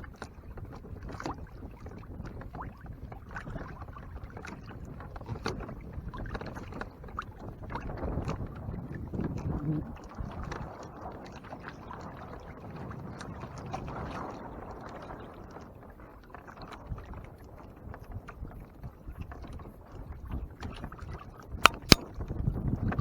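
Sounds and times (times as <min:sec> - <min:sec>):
light clicks: 0:21.6 - 0:22.0.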